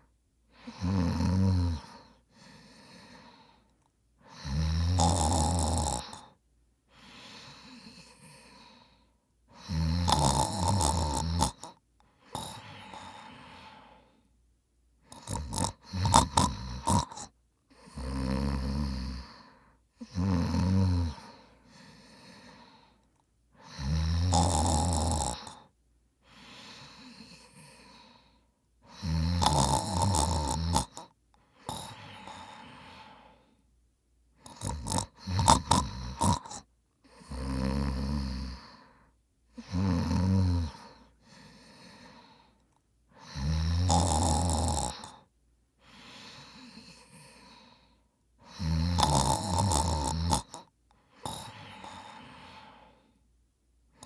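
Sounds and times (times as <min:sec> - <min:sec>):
quiet breaths: 0:00.0 - 0:54.0
man snoring: 0:00.6 - 0:03.5, 0:04.3 - 0:06.4, 0:09.5 - 0:14.0, 0:15.1 - 0:22.8, 0:23.6 - 0:25.7, 0:28.8 - 0:33.4, 0:34.4 - 0:39.0, 0:39.6 - 0:42.4, 0:43.2 - 0:45.3, 0:45.9 - 0:47.8, 0:48.4 - 0:53.0.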